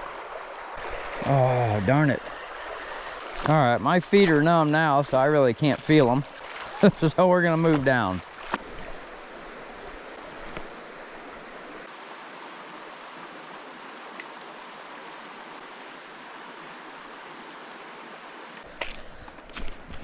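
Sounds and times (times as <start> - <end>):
river water rushing: 0.0 - 19.0
knocks and splashes: 0.8 - 11.1.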